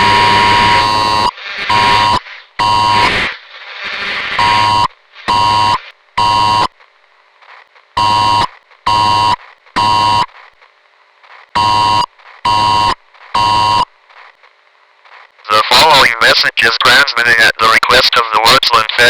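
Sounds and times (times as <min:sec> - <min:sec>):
harsh electronic buzzer blasts: 0:00.0 - 0:03.3, 0:04.0 - 0:06.7, 0:08.0 - 0:10.3, 0:11.6 - 0:13.9.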